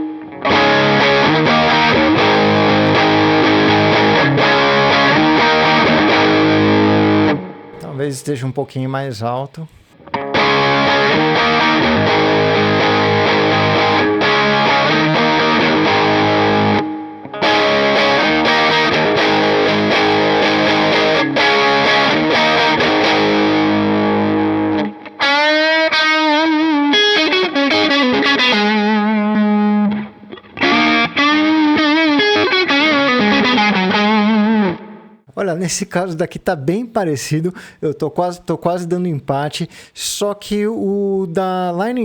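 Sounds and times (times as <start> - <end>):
overdriven electric guitar: 0.0 - 7.9, 9.8 - 35.3.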